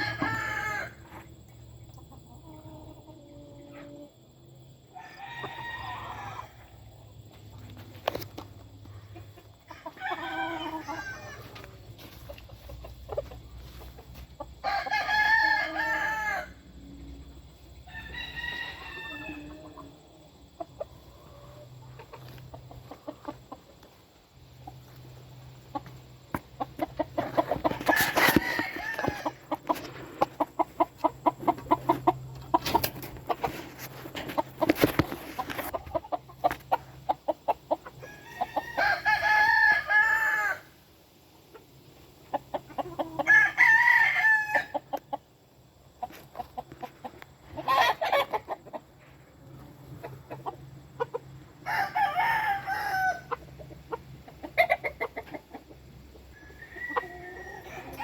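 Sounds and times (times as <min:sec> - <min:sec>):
roosters crowing: 0:00.0 - 0:01.3, 0:04.8 - 0:06.9, 0:09.5 - 0:12.2, 0:14.5 - 0:20.1, 0:24.6 - 0:40.8, 0:42.7 - 0:45.0, 0:47.4 - 0:48.6, 0:51.3 - 0:55.3, 0:56.1 - 0:58.0
chicken clucking and clicks: 0:00.0 - 0:04.8, 0:06.2 - 0:14.6, 0:18.8 - 0:38.8, 0:41.4 - 0:43.3, 0:44.7 - 0:51.6, 0:53.2 - 0:58.0.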